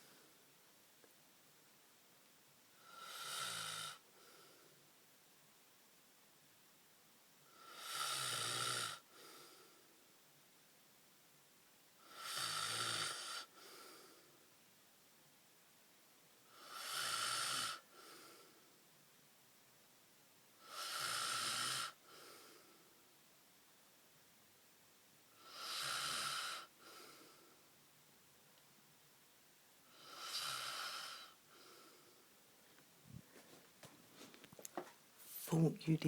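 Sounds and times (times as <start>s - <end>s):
soft breath: 4.1s - 4.9s, 9.1s - 10.0s, 13.5s - 14.5s, 22.0s - 23.0s, 26.7s - 27.7s, 31.1s - 35.6s.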